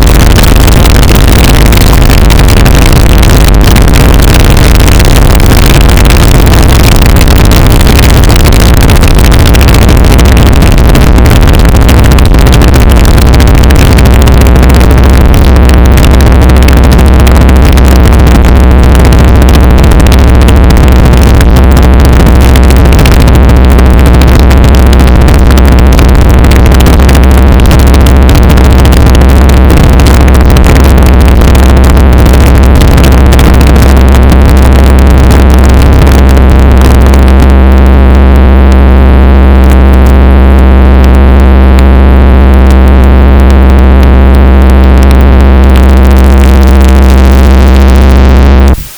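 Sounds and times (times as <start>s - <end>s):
heavy low drone: 0.0s - 36.2s
noise machine roaring: 0.0s - 48.9s
steady hum: 0.0s - 48.9s.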